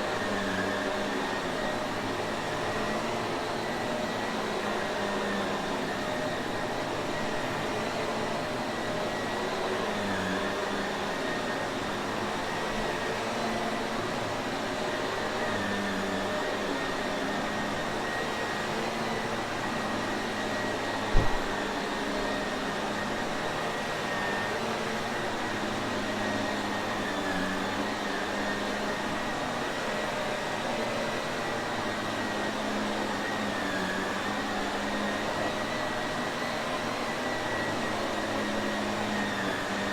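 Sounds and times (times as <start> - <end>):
vacuum cleaner running: 0.0 - 39.9
brief thump: 21.1 - 21.5.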